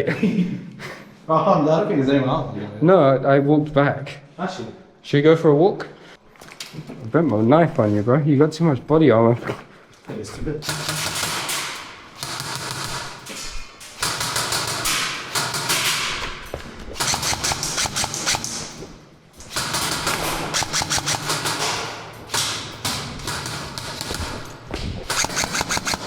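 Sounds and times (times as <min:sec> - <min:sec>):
airsoft guns firing rapidly: 0:10.6 - 0:18.8, 0:19.4 - 0:26.0.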